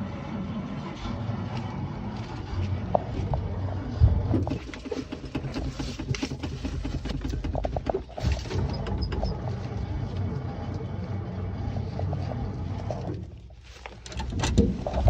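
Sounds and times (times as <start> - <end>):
engine cranking on starter: 0.0 - 15.0.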